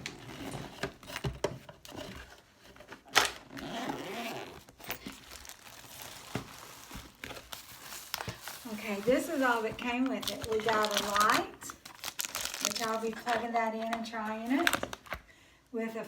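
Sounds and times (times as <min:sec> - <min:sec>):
wrapping crinkling and tearing: 0:03.0 - 0:15.2.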